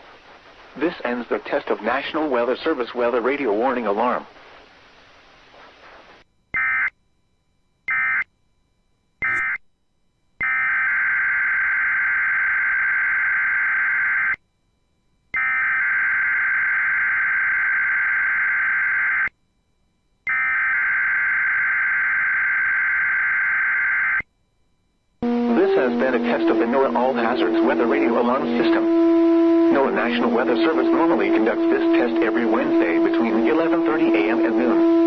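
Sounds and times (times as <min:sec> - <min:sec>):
digital data bursts buzzing warble: 0:09.2 - 0:09.6.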